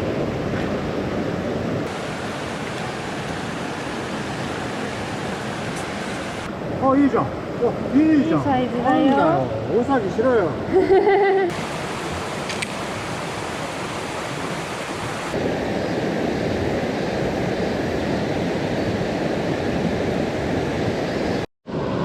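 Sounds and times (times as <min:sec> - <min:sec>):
stream water rushing over rocks: 0:01.9 - 0:08.4, 0:11.5 - 0:15.4.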